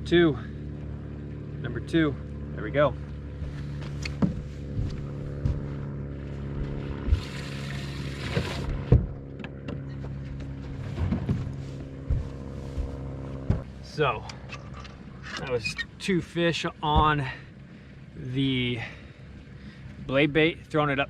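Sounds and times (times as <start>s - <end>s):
boat motor hum: 0.0s - 21.0s
knocks and thumps on boat: 3.4s - 5.8s, 8.4s - 13.7s, 16.9s - 17.3s.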